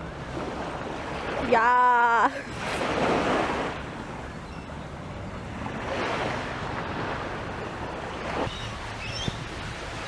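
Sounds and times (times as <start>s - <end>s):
sea surf washing on beach: 0.0s - 4.3s, 5.2s - 10.0s
wind buffeting microphone: 2.4s - 10.0s.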